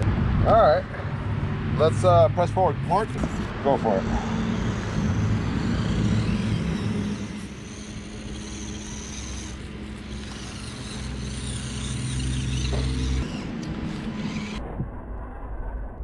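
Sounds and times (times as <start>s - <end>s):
small electric motor hum: 2.5s - 14.7s.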